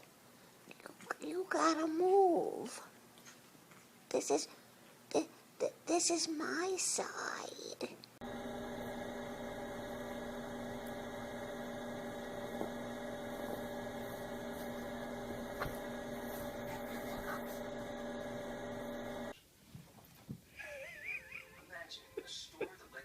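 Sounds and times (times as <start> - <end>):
steady electrical hum: 8.2 - 19.4.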